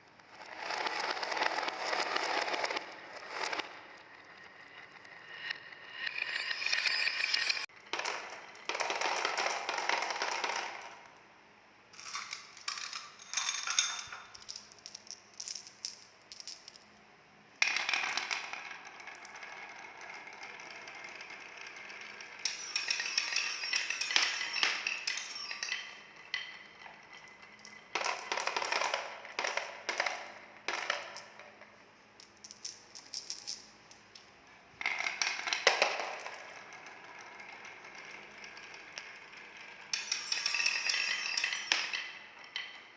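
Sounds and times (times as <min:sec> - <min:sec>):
balls rolling down wooden run: 0:07.8 - 0:11.0, 0:17.6 - 0:31.8, 0:34.8 - 0:42.8.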